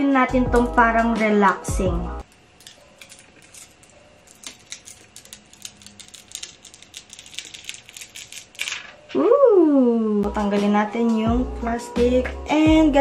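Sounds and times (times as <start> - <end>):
woman saying ooh: 9.2 - 10.3.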